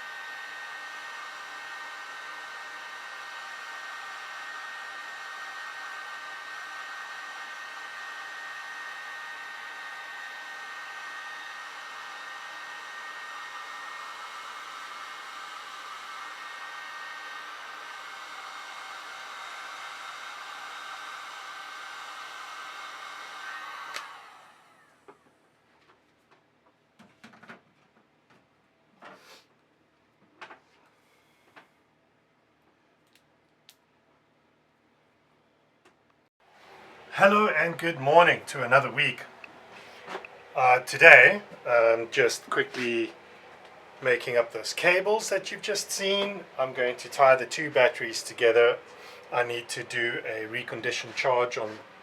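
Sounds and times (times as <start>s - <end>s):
heat gun blowing: 0.0s - 25.2s, 36.5s - 52.0s
heat gun switch click: 23.8s - 24.2s.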